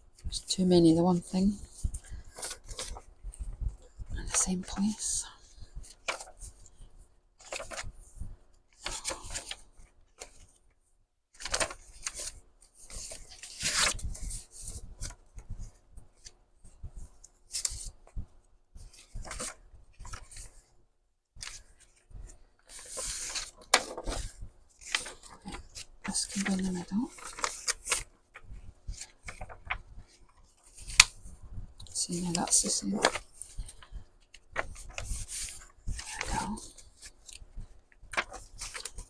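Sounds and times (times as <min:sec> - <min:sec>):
paper sheets rustling and sliding: 0:01.5 - 0:03.1, 0:07.4 - 0:08.1, 0:08.8 - 0:10.5, 0:11.4 - 0:15.2, 0:18.9 - 0:20.6, 0:22.7 - 0:31.3, 0:31.9 - 0:39.0.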